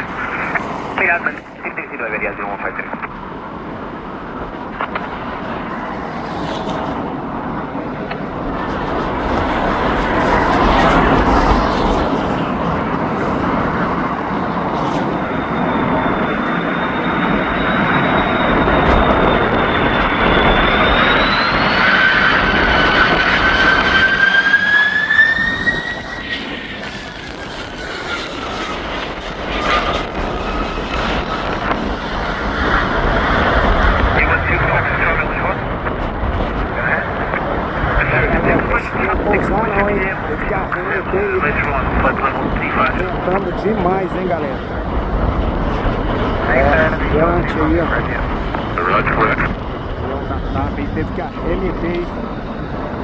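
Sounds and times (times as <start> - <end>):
high engine whine: 0.0 - 53.0
jet engines rushing: 0.0 - 53.0.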